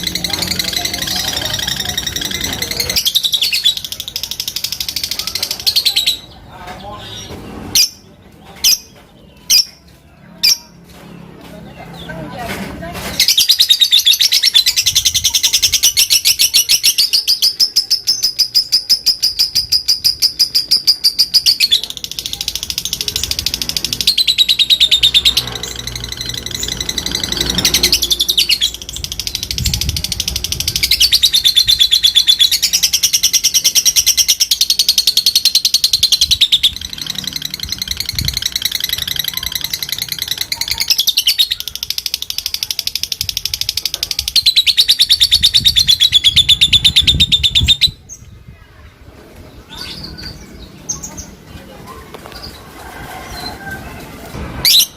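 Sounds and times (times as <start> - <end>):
lovebird chattering trill: 13.2 - 48.2.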